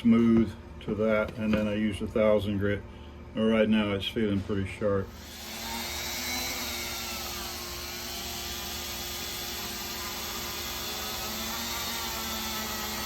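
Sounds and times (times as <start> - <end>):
power tool motor whirring: 5.1 - 13.0.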